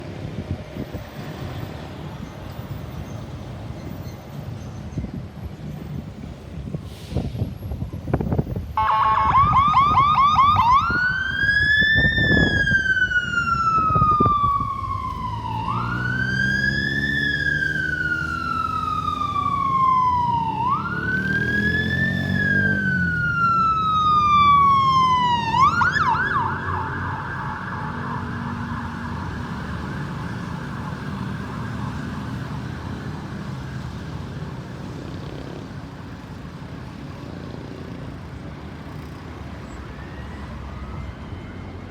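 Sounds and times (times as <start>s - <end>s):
vehicle engine and road noise: 0.0s - 41.9s
ambulance siren wailing and yelping: 8.8s - 34.0s, 39.9s - 41.9s.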